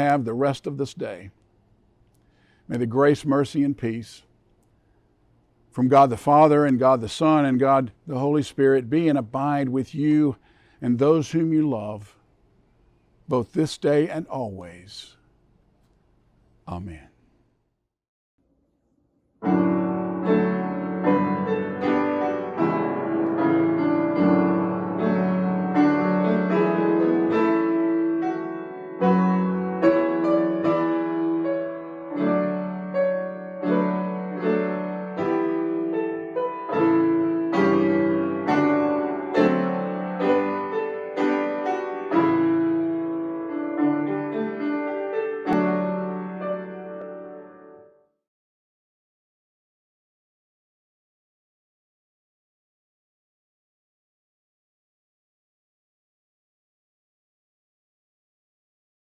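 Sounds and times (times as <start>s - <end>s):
solo piano piece: 19.4s - 48.1s.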